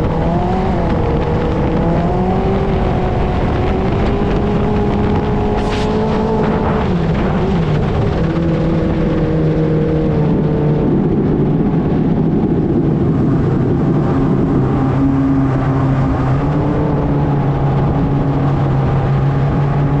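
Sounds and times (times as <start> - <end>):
engine with loud exhaust note: 0.0 - 20.0.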